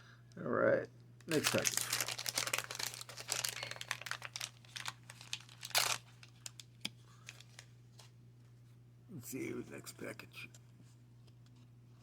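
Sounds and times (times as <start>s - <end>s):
paper wrapper tearing and crinkling: 1.3s - 7.7s.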